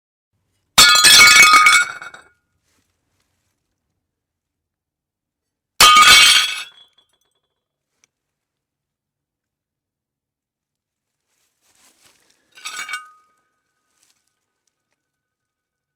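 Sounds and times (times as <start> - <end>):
plates smashing on hard floor: 0.8 - 2.2, 5.8 - 6.8
shards clattering and ringing: 12.6 - 13.3.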